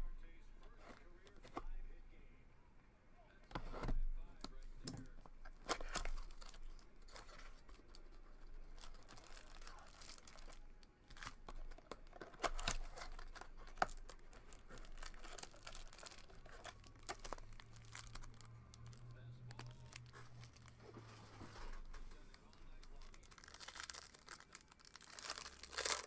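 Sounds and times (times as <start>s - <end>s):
packaging being torn and crinkled: 4.4s - 20.9s, 21.6s - 26.0s.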